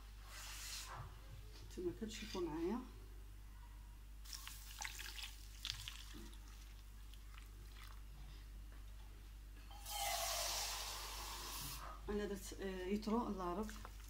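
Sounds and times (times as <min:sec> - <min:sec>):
water pouring into a pot: 0:04.3 - 0:06.8.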